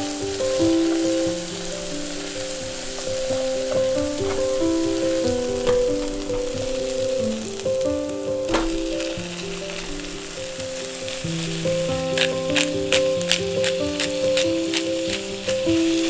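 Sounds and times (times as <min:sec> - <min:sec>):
food sizzling in frying pan: 0:00.0 - 0:16.0
simple background music: 0:00.0 - 0:16.0
light knocks: 0:02.8 - 0:07.4, 0:08.5 - 0:09.2.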